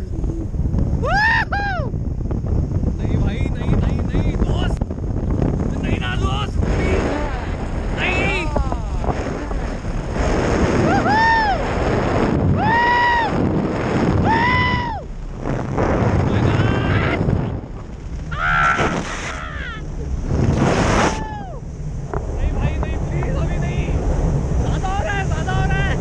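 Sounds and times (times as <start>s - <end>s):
wind rushing across microphone: 0.0s - 26.0s
man screaming in fright: 10.9s - 11.6s, 12.6s - 13.3s, 14.2s - 15.0s, 18.3s - 19.8s.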